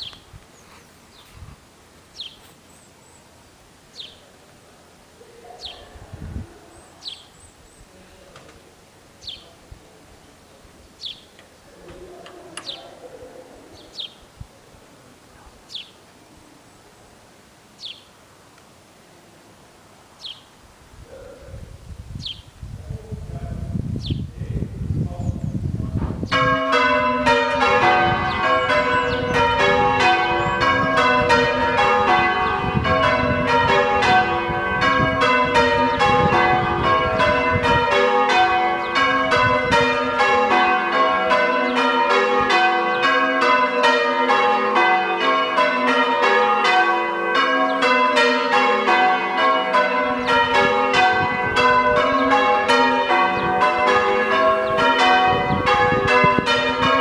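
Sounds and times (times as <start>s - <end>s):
church bells ringing in changes: 26.3s - 57.0s.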